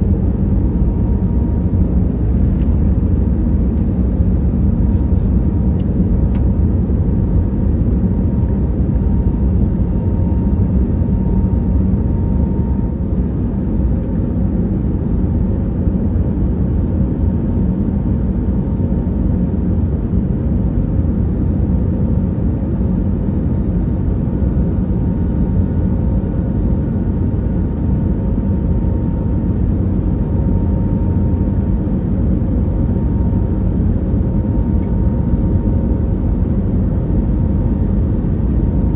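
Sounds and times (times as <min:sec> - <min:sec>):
airplane cabin rumble: 0:00.0 - 0:38.9.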